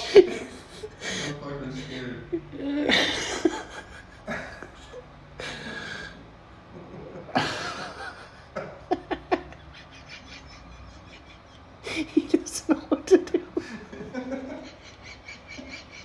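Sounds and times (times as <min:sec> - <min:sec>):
man laughing: 0:00.0 - 0:16.0
breathy gasps: 0:05.4 - 0:06.2.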